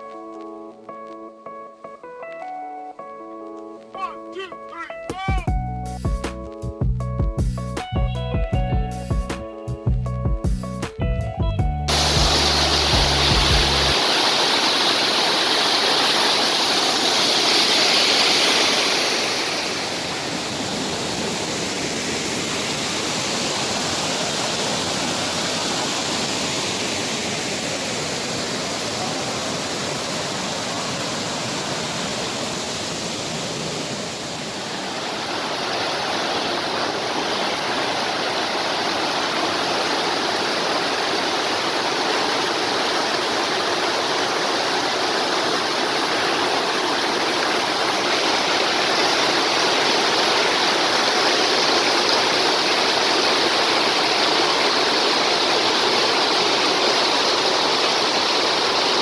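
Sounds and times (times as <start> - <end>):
waterfall rushing and splashing: 11.9 - 59.0.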